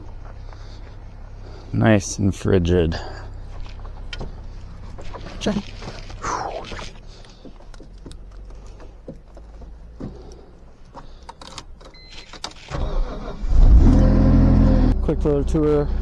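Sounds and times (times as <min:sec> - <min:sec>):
handling clicks and knocks: 0:03.5 - 0:12.7
car engine starting: 0:11.1 - 0:16.0.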